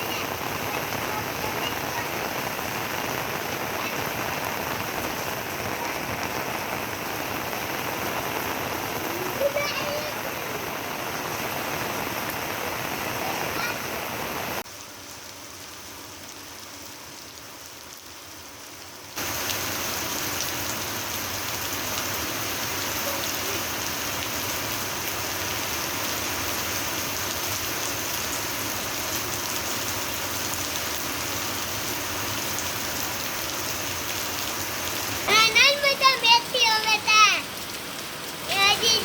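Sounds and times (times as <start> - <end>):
steady rain falling: 0.0 - 39.0.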